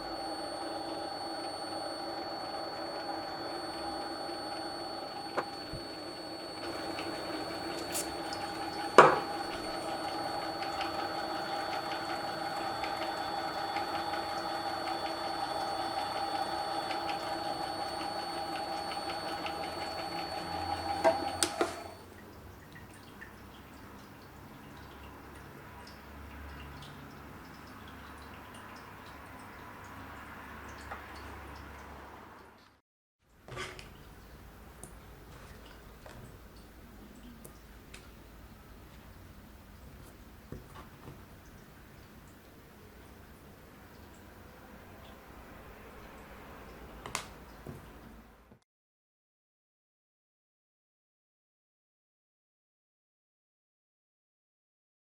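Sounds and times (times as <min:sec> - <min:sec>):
lathe humming with high whine: 0:00.0 - 0:22.0.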